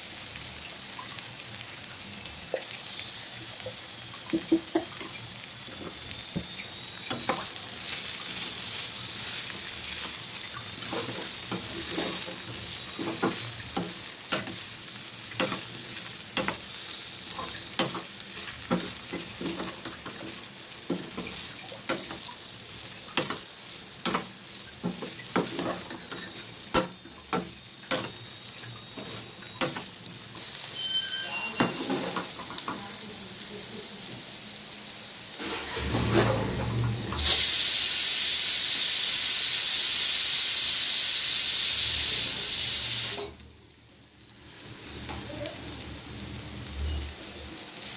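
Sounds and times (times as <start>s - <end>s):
vegetables sizzling in a pan: 0.0s - 47.9s
spatula scraping a pan: 10.8s - 14.7s, 24.0s - 28.2s, 30.8s - 32.5s.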